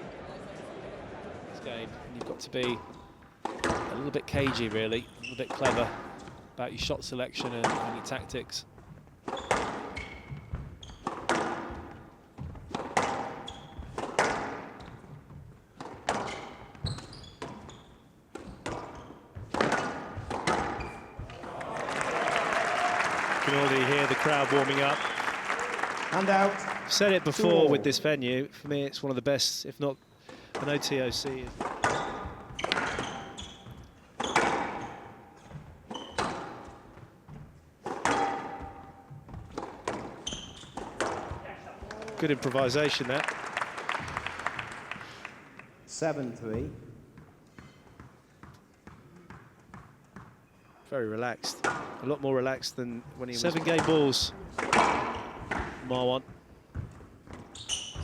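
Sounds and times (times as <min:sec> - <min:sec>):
shoe squeaks: 0:02.7 - 0:03.2, 0:04.8 - 0:06.4, 0:09.2 - 0:11.4, 0:13.2 - 0:14.0, 0:16.1 - 0:21.4, 0:31.2 - 0:36.7, 0:40.0 - 0:41.8, 0:57.3 - 0:58.0
squash ball hits echoing: 0:03.4 - 0:04.8, 0:09.2 - 0:14.9, 0:18.4 - 0:22.4, 0:30.5 - 0:33.4, 0:34.2 - 0:35.2, 0:37.8 - 0:42.4, 0:53.6 - 0:55.9.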